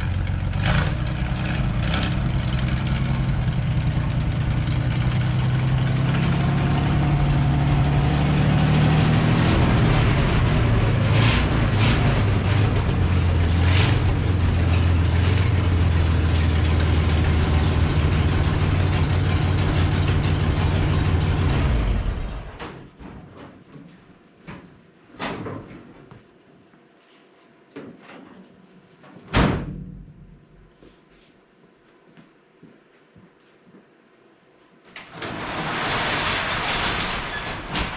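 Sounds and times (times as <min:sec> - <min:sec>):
tractor engine running: 0:00.0 - 0:22.7.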